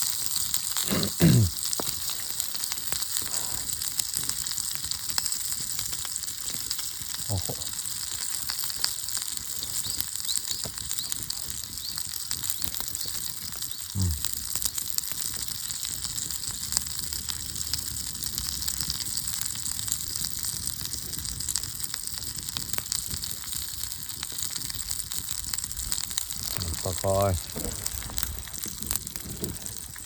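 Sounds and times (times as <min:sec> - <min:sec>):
steak sizzling in a pan: 0:00.0 - 0:30.0
short low vocal sound: 0:00.8 - 0:01.5, 0:07.3 - 0:07.8, 0:14.0 - 0:14.3, 0:26.4 - 0:28.3.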